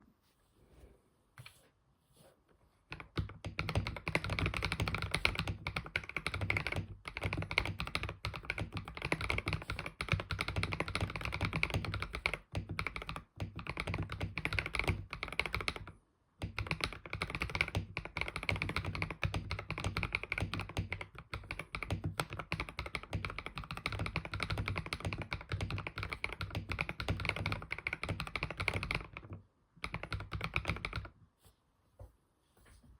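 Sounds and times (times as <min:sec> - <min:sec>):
fast typing on mechanical keyboard: 0:02.9 - 0:31.1.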